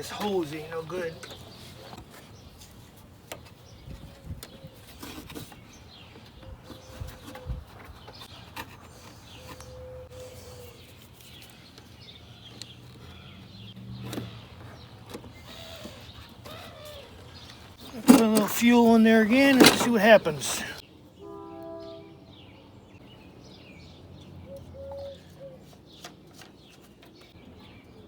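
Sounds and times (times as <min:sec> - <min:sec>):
birds chirping: 0:00.0 - 0:28.0
clicks and knocks of handling: 0:17.4 - 0:20.7.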